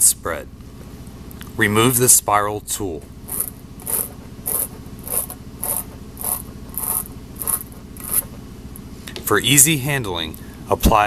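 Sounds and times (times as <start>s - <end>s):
reamer rasping against rubber: 3.3s - 8.4s.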